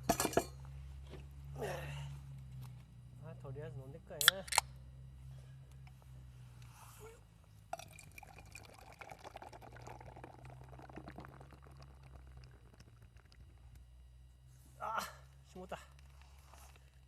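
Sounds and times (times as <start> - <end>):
drink pouring into a cup: 7.7 - 13.7.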